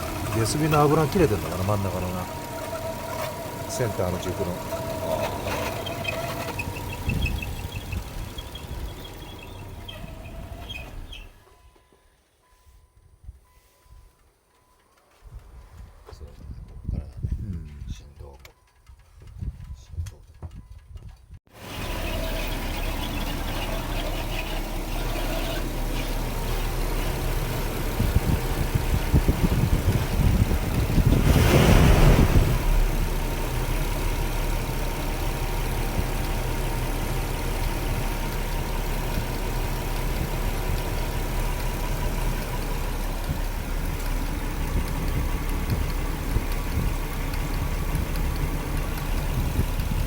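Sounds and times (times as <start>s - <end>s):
distributor noise: 0.0s - 9.6s
car engine idling: 0.0s - 11.5s, 21.5s - 50.0s.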